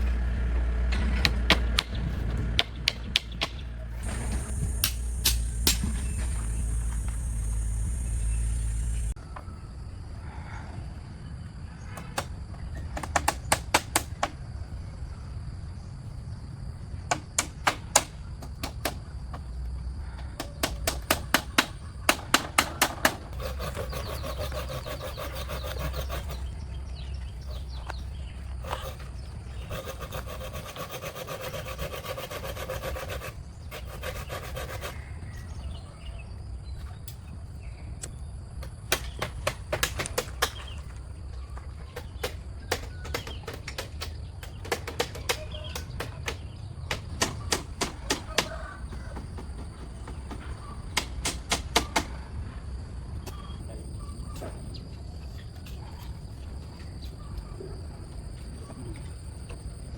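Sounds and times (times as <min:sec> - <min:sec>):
rasping sawing strokes: 0:00.0 - 0:09.2, 0:20.6 - 0:35.6
sharp knocks on wood: 0:01.0 - 0:06.6, 0:20.4 - 0:23.2, 0:38.9 - 0:40.8.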